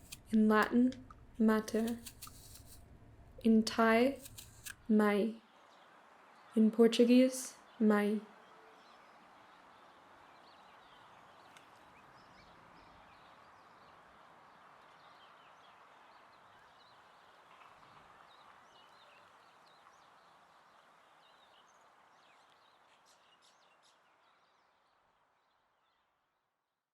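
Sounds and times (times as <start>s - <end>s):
steady hiss: 0.0s - 0.3s.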